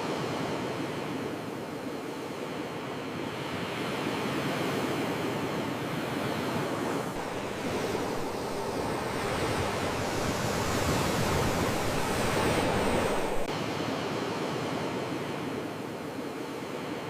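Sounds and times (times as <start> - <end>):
sea waves surf: 0.0 - 17.0.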